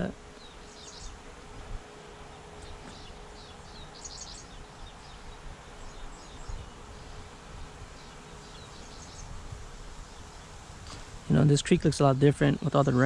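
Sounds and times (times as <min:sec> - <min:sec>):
high bird chirps: 0:00.0 - 0:01.2, 0:02.3 - 0:09.4
faint insect hum: 0:00.0 - 0:13.0.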